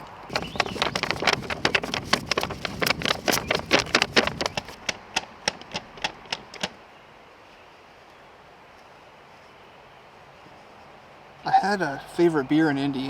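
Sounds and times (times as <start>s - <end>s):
sharp clicks and taps: 0.3s - 6.8s.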